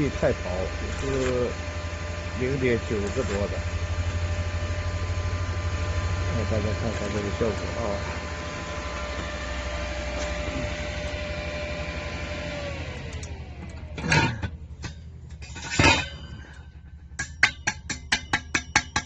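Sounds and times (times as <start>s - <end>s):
welding arc hissing and humming: 0.0s - 11.6s
loud metallic knocks: 17.2s - 19.0s.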